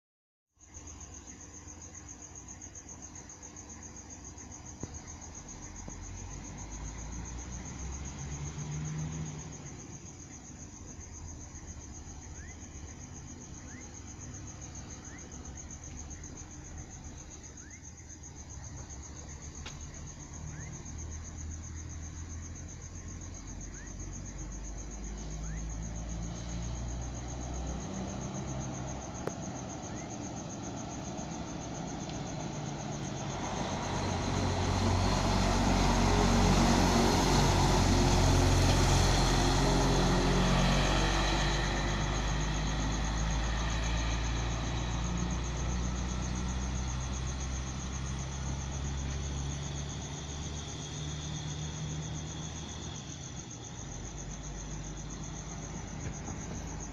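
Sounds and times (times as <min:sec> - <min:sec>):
diesel engine rumbling: 0:04.1 - 0:56.9.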